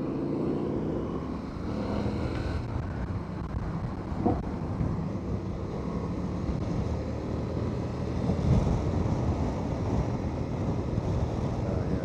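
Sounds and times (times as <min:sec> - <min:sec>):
wind noise on microphone: 0:06.3 - 0:12.0.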